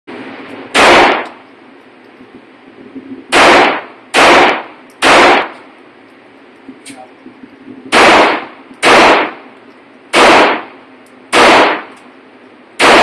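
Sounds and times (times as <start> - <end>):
pistol shots: 0.7 - 1.4, 3.3 - 5.6, 7.9 - 9.5, 10.1 - 12.0, 12.8 - 13.0.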